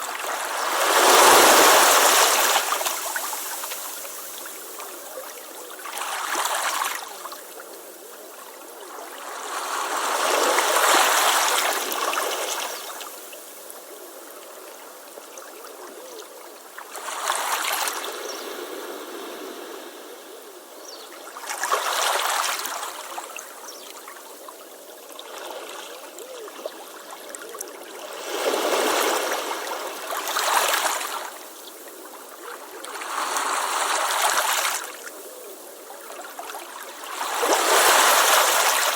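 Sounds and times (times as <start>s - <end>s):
ocean waves washing onto beach: 0.0s - 7.6s, 8.3s - 13.8s, 35.8s - 38.9s.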